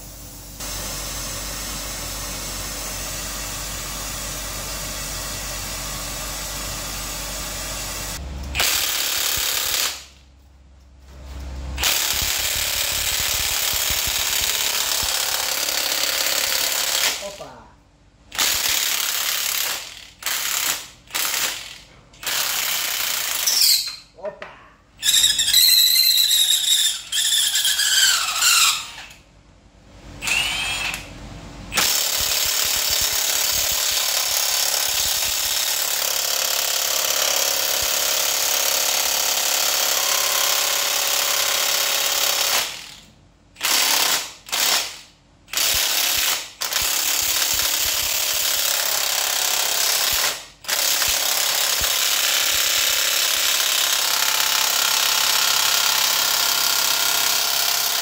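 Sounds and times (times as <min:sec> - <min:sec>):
squeal falling in pitch: 0:25.0 - 0:29.0.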